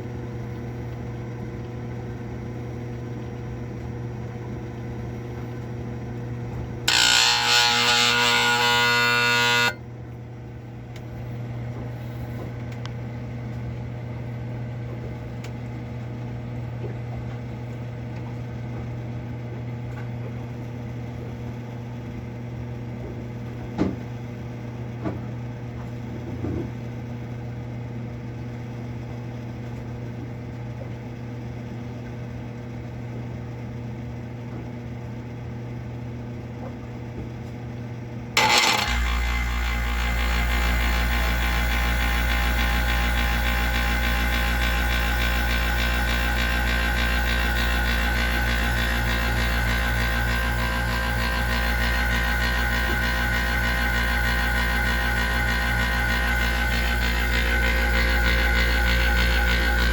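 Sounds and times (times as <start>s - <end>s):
compressor harsh buzz: 6.8s - 9.8s, 38.4s - 59.9s.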